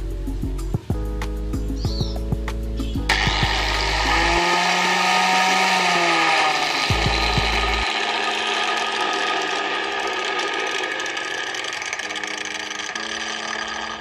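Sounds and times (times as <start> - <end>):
background music: 0.0 - 8.4
angle grinder mill grinding: 3.1 - 14.0.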